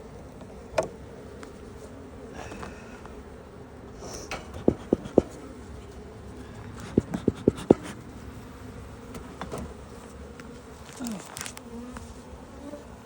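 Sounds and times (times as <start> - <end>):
honeybees buzzing: 0.0 - 13.0
short dull knocks: 4.4 - 5.4, 6.8 - 8.0.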